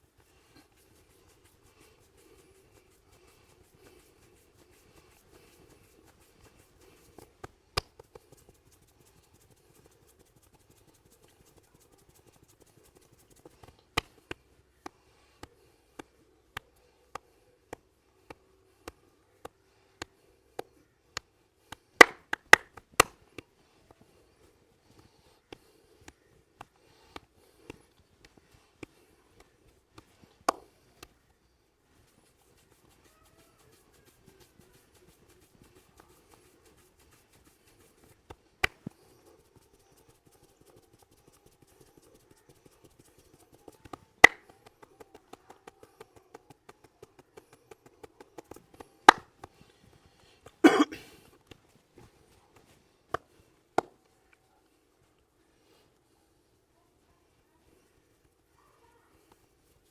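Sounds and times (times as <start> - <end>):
hands rubbing scalp: 0.0 - 31.2, 31.9 - 50.8
hand taps on body: 6.4 - 8.5, 13.4 - 24.0, 25.4 - 31.1, 43.0 - 49.7, 50.4 - 54.1.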